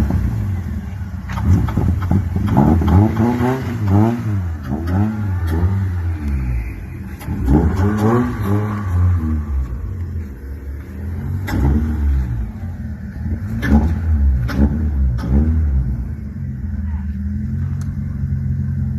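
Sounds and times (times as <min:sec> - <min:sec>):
car engine revving: 0:00.0 - 0:18.9
exhaust pops: 0:01.2 - 0:16.1.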